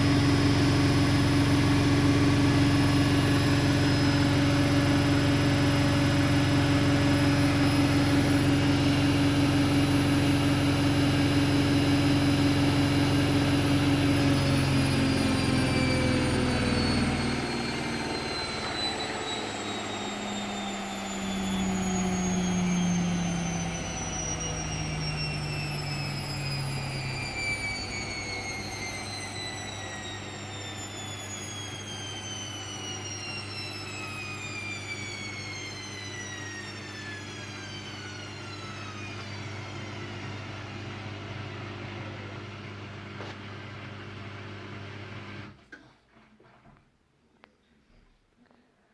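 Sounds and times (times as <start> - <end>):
washing machine spinning down: 0.0 - 45.6.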